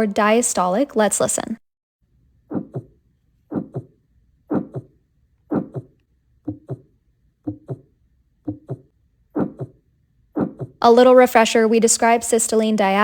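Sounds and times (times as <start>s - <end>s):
whooshing heart murmur: 2.5s - 2.9s, 3.5s - 3.9s, 4.5s - 4.9s, 5.5s - 6.9s, 7.5s - 7.8s, 8.5s - 9.8s, 10.4s - 10.8s
heartbeat lub-dub: 2.5s - 7.9s, 8.5s - 9.8s, 10.4s - 10.8s.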